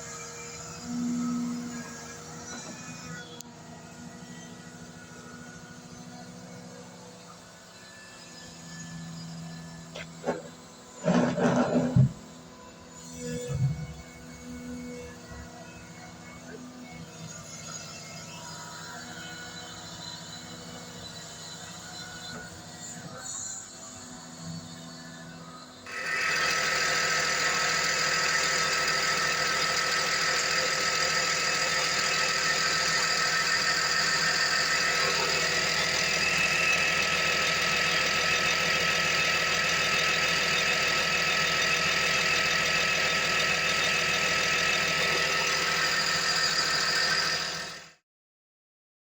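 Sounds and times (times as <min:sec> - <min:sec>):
excavator diesel engine running: 0:09.8 - 0:12.6, 0:25.9 - 0:48.0.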